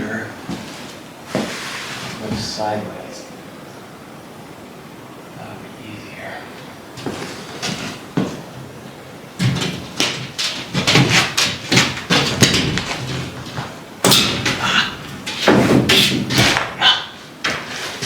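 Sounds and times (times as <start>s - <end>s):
plywood sliding scrapes: 7.0s - 8.4s, 17.5s - 18.0s
plywood thumping on wood framing: 9.4s - 18.0s.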